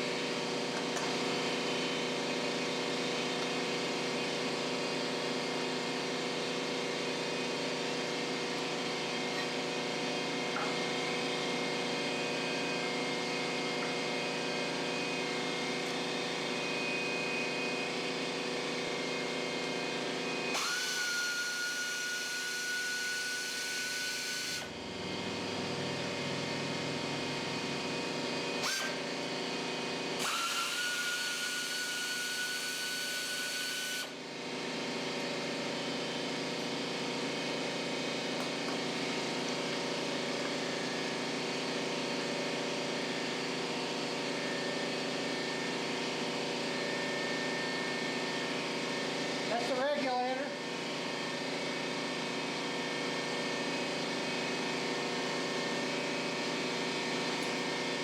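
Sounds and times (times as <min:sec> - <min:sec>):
motor running steadily: 0:00.0 - 0:58.0
power tool whining: 0:06.8 - 0:26.0, 0:27.3 - 0:34.2.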